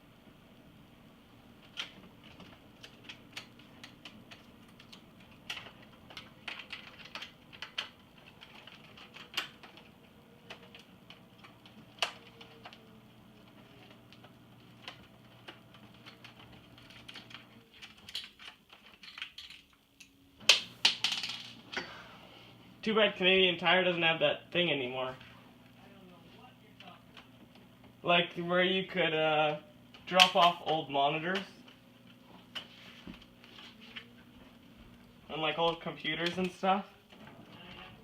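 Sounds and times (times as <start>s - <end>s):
faint steady hum: 0.0s - 38.0s
tools and parts clicking: 14.8s - 21.6s.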